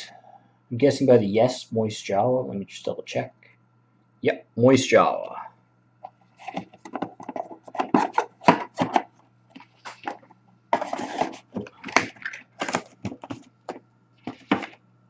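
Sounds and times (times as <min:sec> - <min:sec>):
trading cards and packaging rustling: 0:06.1 - 0:14.8.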